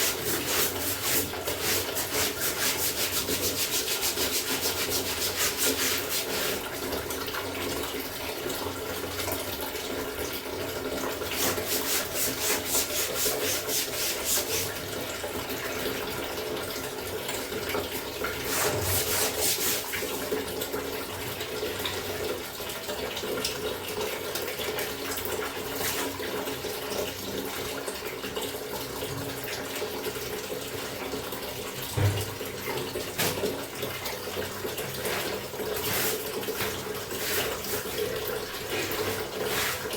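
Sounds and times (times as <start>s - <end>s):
clothes rubbing and sloshing: 0.0s - 6.8s, 11.3s - 14.8s, 18.4s - 20.3s, 34.7s - 39.9s
tap water running into basin: 0.0s - 39.9s.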